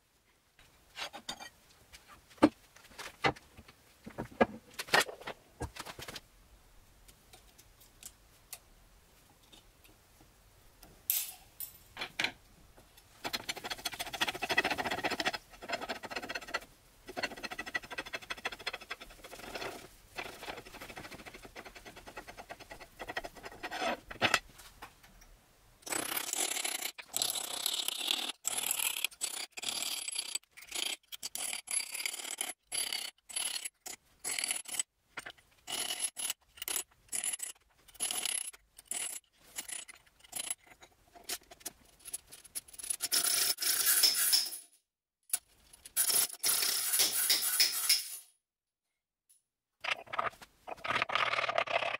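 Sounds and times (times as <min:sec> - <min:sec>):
tools scraping on parts: 0:01.0 - 0:01.6, 0:13.2 - 0:24.5, 0:25.8 - 0:44.7, 0:45.3 - 0:48.3.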